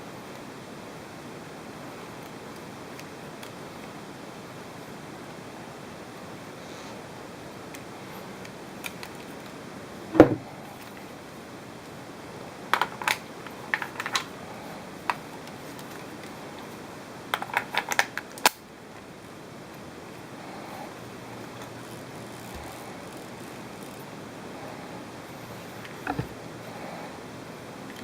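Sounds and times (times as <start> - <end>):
steady hiss: 0.0 - 28.0
knock: 10.2 - 10.5.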